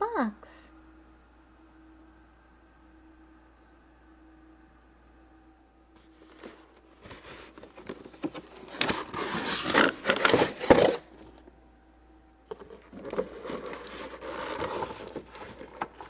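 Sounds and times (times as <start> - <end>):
packaging crinkling and tearing: 6.0 - 11.5, 12.5 - 16.0.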